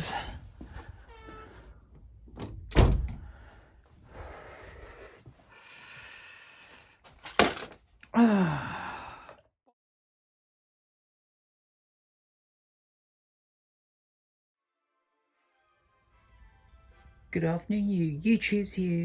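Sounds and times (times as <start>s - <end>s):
heavy thunks: 2.2s - 3.6s.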